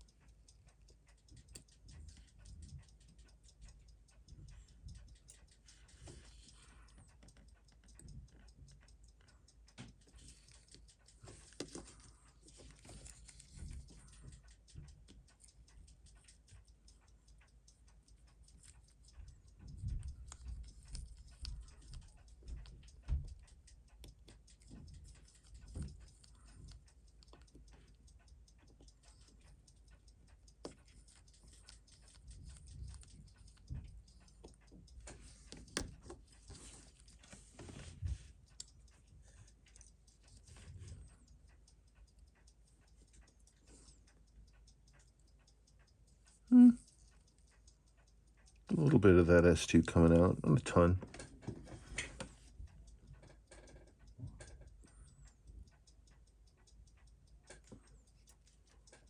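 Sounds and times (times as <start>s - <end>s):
fast faint ticking: 0.0s - 59.0s
small tools clicking on bench: 18.3s - 37.9s, 47.2s - 56.0s.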